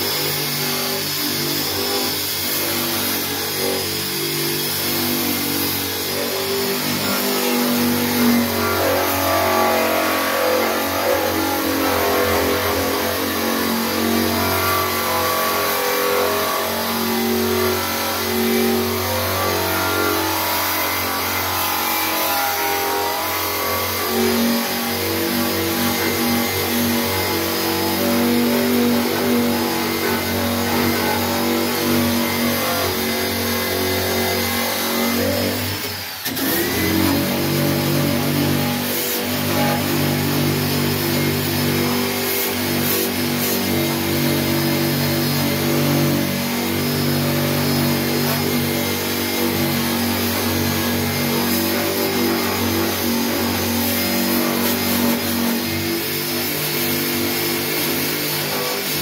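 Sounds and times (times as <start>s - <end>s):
power tool grinding metal: 0.0s - 59.0s.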